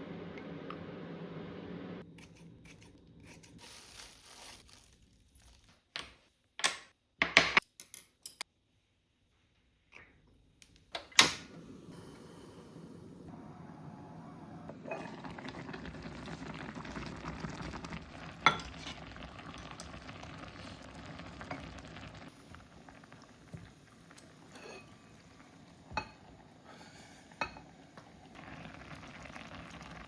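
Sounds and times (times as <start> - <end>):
pot bubbling and simmering: 11.5 - 30.0.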